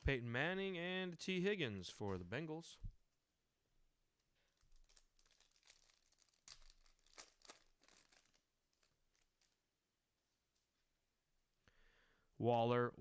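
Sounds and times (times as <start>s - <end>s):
cards rustling: 1.0s - 2.5s, 4.4s - 9.6s
foil wrapper tearing: 4.4s - 9.6s.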